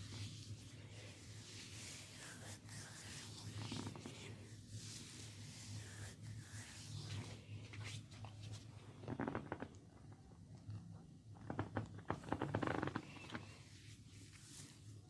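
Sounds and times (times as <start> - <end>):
wet crackling and rubbing of hair: 0.0 - 10.8, 11.4 - 15.0.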